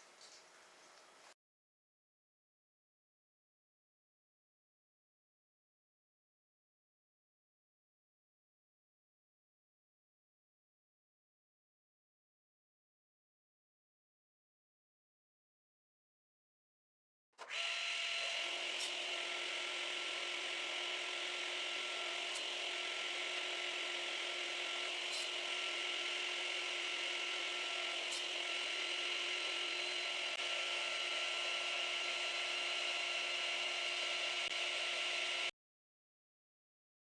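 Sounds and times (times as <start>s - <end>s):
table saw running: 17.4s - 35.5s.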